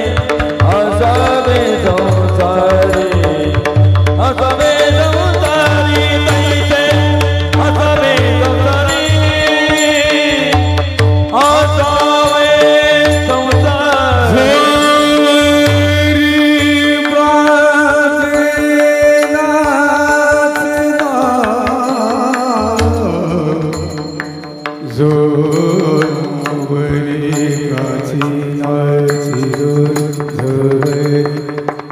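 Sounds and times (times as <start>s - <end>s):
person singing devotional melody: 0.0s - 31.9s.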